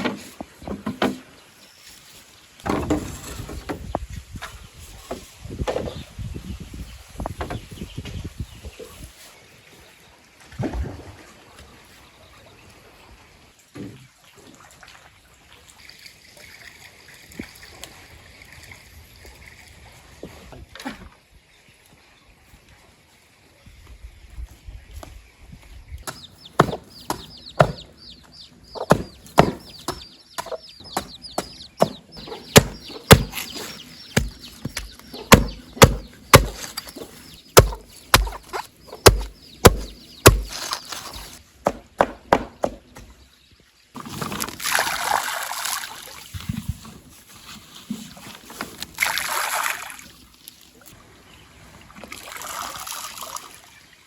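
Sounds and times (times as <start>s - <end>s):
sharp knocks: 28.8s - 32.0s, 32.6s - 33.5s, 34.2s - 36.8s, 37.6s - 38.4s.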